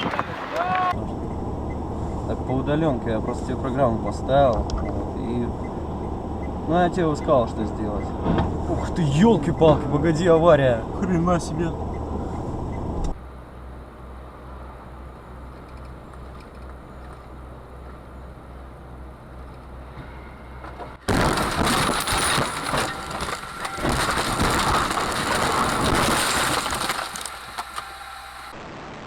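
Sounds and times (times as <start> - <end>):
vehicle engine hum: 0.0 - 28.6
rough noise with knocks and rattles: 19.9 - 28.5.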